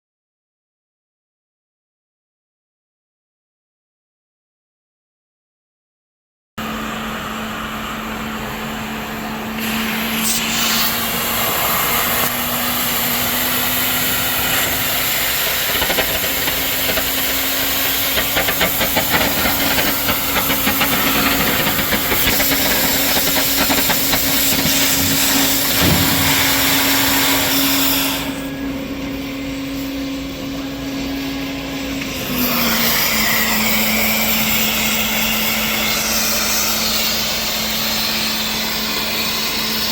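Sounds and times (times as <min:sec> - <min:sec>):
cutting torch gas jet hissing: 0:06.7 - 0:28.6.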